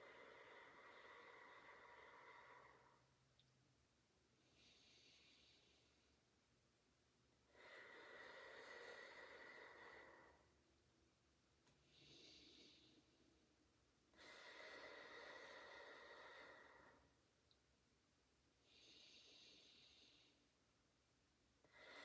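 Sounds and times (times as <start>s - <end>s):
slow controlled breathing: 0.0s - 3.2s, 4.4s - 6.2s, 7.5s - 10.6s, 11.7s - 13.5s, 14.1s - 17.2s, 18.6s - 20.5s, 21.6s - 22.0s.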